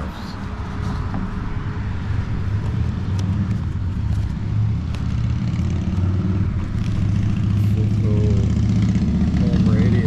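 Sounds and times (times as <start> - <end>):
motorcycle engine rumbling: 2.1 - 10.0.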